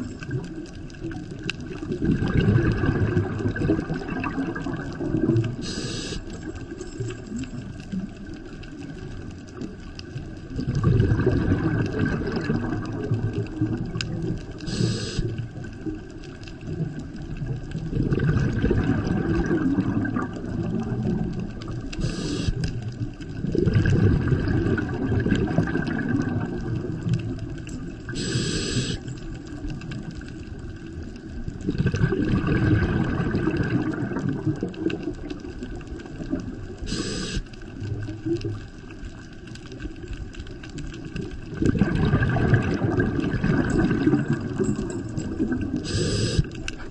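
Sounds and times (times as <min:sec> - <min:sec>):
exhaled air bubbling underwater: 0:00.0 - 0:46.9
regulator inhalation hiss: 0:05.6 - 0:06.3, 0:14.6 - 0:15.4, 0:22.0 - 0:22.7, 0:28.1 - 0:29.1, 0:36.8 - 0:37.5, 0:45.8 - 0:46.6.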